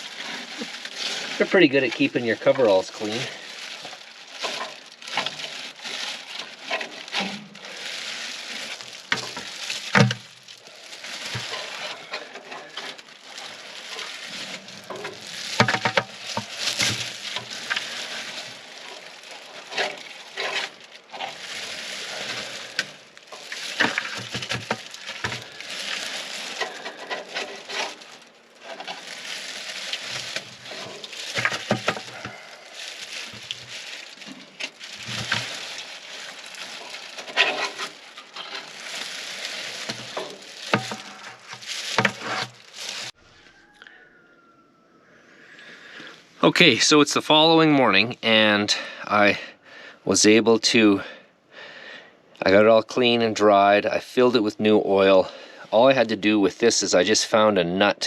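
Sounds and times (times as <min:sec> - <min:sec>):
scraping and scrubbing metal tank: 0:00.0 - 0:43.1.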